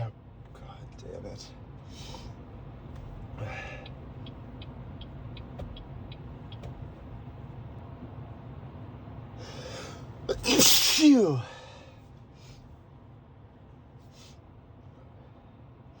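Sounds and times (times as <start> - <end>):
car cabin road rumble: 0.0 - 16.0
breath drawn before sneeze: 10.4 - 11.2.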